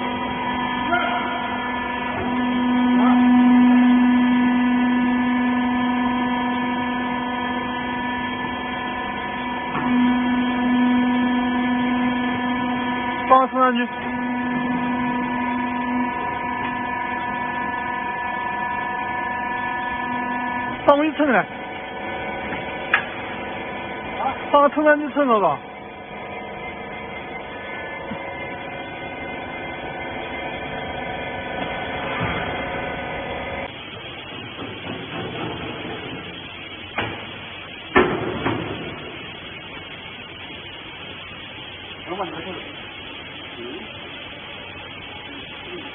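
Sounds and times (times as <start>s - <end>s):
hydraulic motor and pump humming: 0.0s - 45.9s.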